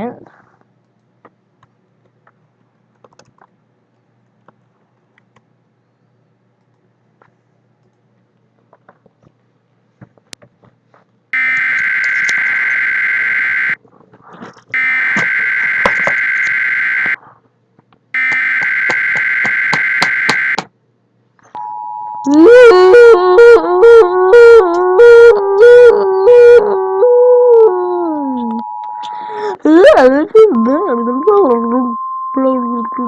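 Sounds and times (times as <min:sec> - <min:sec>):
steady alert tone: 0:11.4 - 0:13.8, 0:14.8 - 0:17.2, 0:18.2 - 0:20.6
two-tone digital data bursts: 0:11.4 - 0:13.8, 0:14.8 - 0:17.2, 0:18.2 - 0:20.6.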